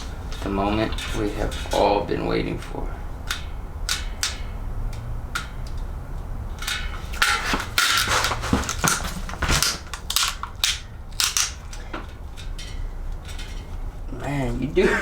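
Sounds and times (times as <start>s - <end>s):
tape pulled off a roll: 7.1s - 11.6s.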